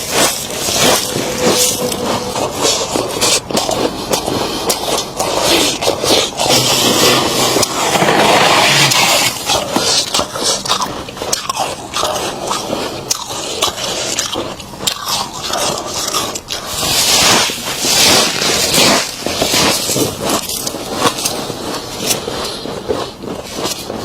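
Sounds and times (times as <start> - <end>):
hissing scrape: 0.0 - 12.9
frost crunching and crackling: 0.0 - 24.0.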